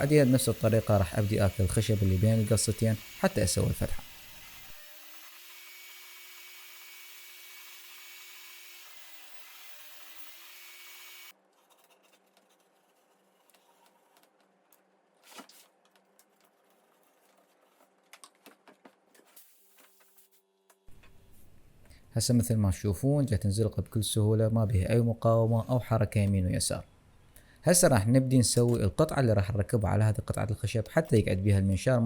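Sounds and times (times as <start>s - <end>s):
circular saw cutting board: 0.0s - 11.3s.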